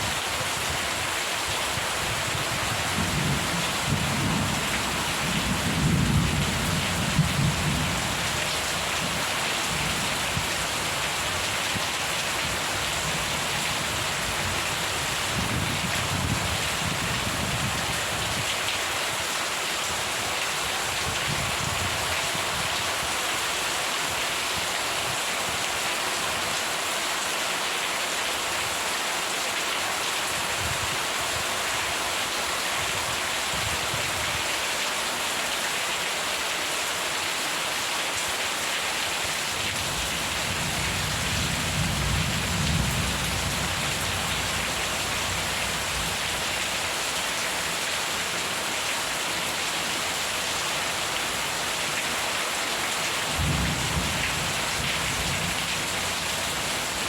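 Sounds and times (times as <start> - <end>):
steady rain falling: 0.0 - 57.0
low rumble of thunder: 2.5 - 8.3, 39.8 - 46.2, 53.3 - 56.2.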